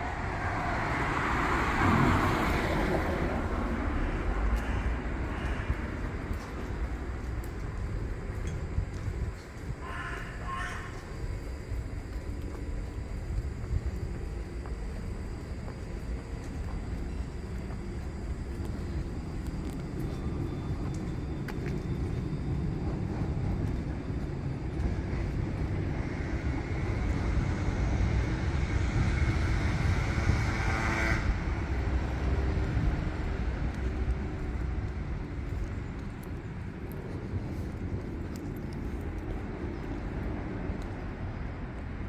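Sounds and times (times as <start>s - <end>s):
passing vehicle tyre noise: 0.0s - 8.9s, 24.4s - 38.4s
street traffic rumbling: 0.0s - 42.0s.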